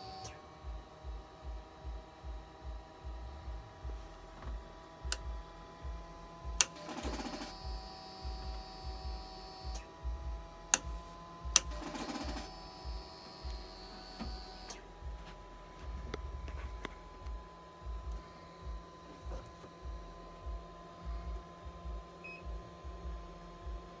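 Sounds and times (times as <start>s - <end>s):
high electrical whine: 0.0s - 24.0s
starter solenoid clicking: 6.6s - 9.9s, 10.7s - 14.9s.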